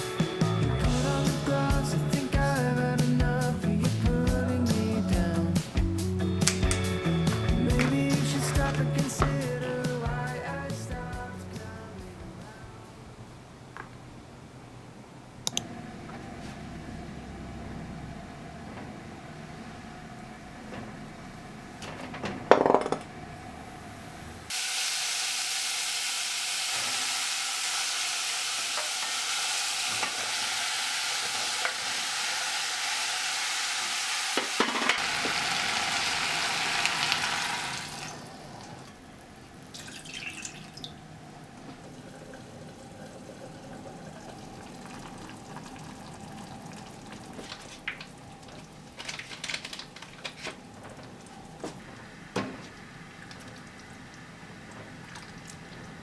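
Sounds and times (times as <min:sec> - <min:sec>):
food sizzling in a pan: 0:24.5 - 0:38.5.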